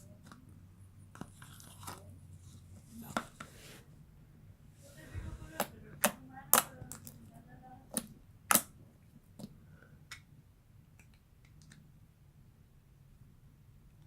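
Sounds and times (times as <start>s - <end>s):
slime clicking pops: 7.9s - 8.7s.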